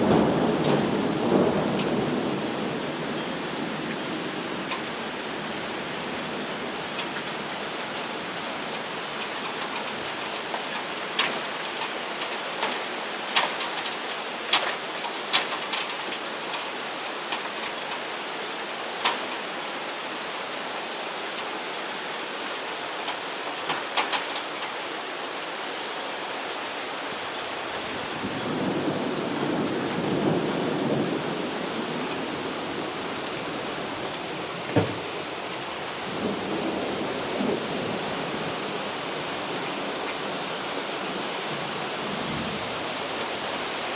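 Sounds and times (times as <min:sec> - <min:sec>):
thunder rumble: 0:00.0 - 0:04.8, 0:27.7 - 0:43.9
rain hiss: 0:00.0 - 0:43.9
raindrop taps: 0:00.6 - 0:00.9, 0:01.7 - 0:02.1, 0:04.6 - 0:04.9, 0:07.0 - 0:07.4, 0:08.7 - 0:18.0, 0:19.0 - 0:19.4, 0:23.0 - 0:24.7, 0:34.0 - 0:35.3
short thump: 0:34.7 - 0:35.0.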